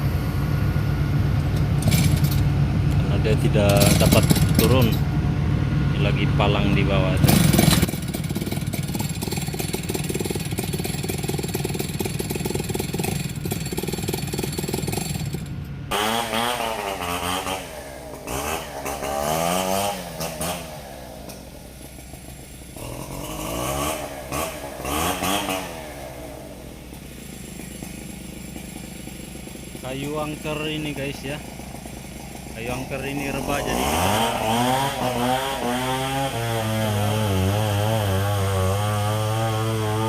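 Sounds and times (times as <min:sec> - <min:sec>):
chainsaw revving: 0:01.7 - 0:02.5, 0:03.3 - 0:05.0, 0:06.5 - 0:40.0.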